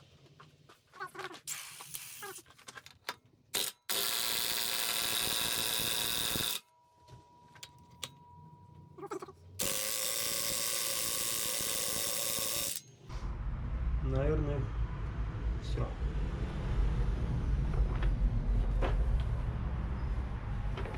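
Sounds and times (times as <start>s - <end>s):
small power tool whirring: 3.6s - 6.7s, 9.6s - 13.0s.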